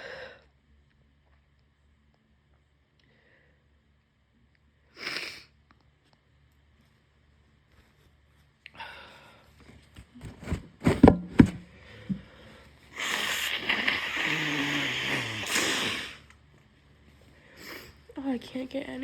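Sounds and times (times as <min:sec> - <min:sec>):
nose blow into tissue: 0:05.0 - 0:05.5, 0:12.9 - 0:16.3
bursts of breath through nose: 0:12.9 - 0:16.3.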